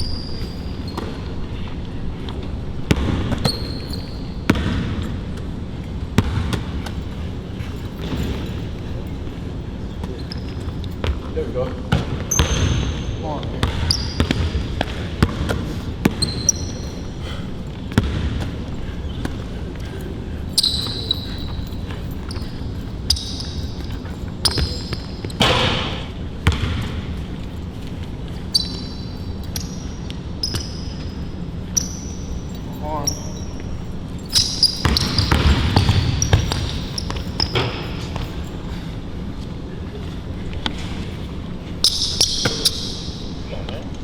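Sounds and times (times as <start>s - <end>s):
sneakers squeaking: 0.0s - 44.0s
basketball bouncing: 2.8s - 5.5s, 6.2s - 7.3s, 10.0s - 11.3s, 11.9s - 17.0s, 17.8s - 19.6s, 20.6s - 27.6s, 34.3s - 38.7s, 41.8s - 43.1s.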